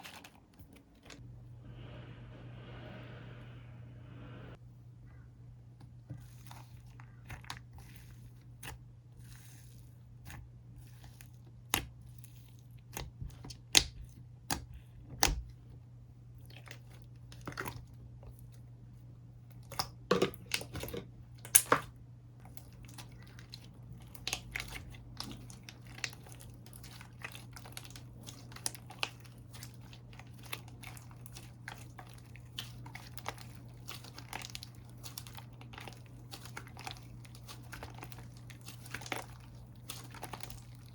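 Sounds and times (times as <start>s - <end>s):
slime squished by hand: 22.4s - 40.9s.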